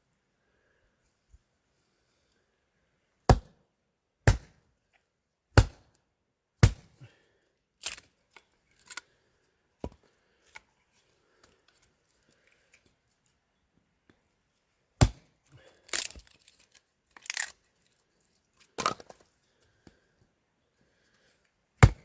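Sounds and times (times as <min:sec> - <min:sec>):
firewood cracking: 0:15.8 - 0:17.5.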